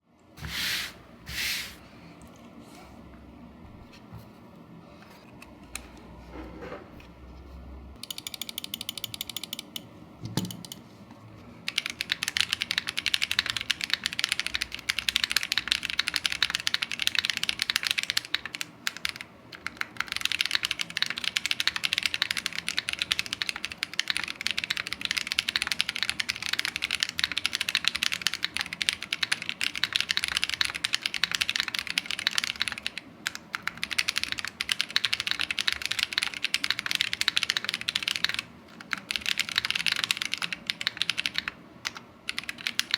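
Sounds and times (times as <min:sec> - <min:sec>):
fast mechanical keyboard typing: 0:08.0 - 0:09.8, 0:11.7 - 0:42.9.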